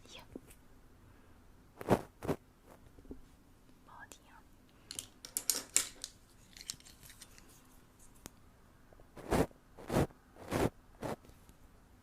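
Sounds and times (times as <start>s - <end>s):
faint scratching: 9.2s - 11.4s.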